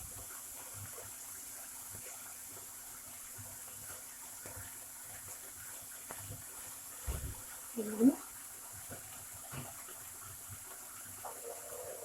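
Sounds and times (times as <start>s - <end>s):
meat sizzling in oil: 0.0s - 12.0s.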